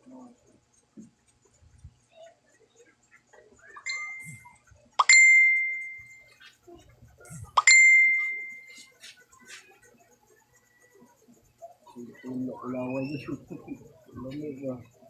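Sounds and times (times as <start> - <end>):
bell-like ding: 3.9 - 4.4, 5.0 - 6.3, 7.6 - 8.8.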